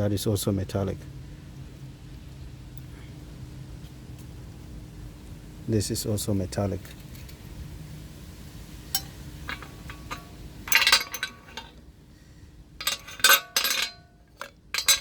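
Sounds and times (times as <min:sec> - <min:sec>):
metal debris clinking and scraping: 0:08.9 - 0:11.9, 0:12.8 - 0:15.0.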